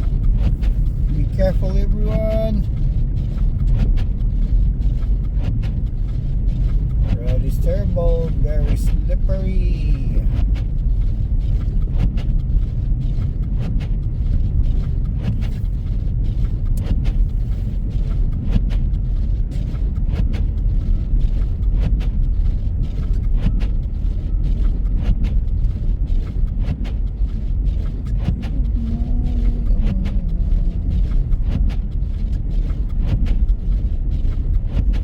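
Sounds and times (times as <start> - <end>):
low road rumble: 0.0 - 35.0
small irregular clicks: 0.0 - 35.0.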